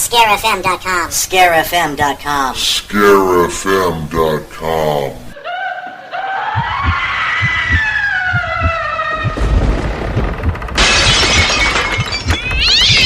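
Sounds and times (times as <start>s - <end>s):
eerie wail: 5.4s - 9.9s
low thuds: 6.6s - 11.6s.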